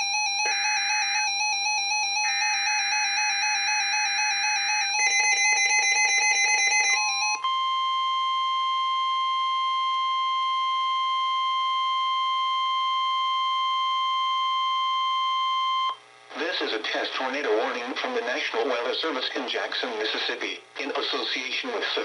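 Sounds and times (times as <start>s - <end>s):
steady warning alarm tone: 0.0s - 16.0s.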